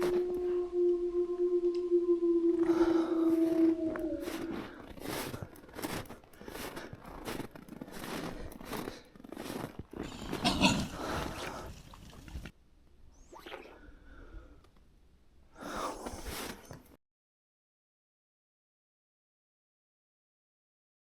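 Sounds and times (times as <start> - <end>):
footsteps walking: 3.9 - 10.4.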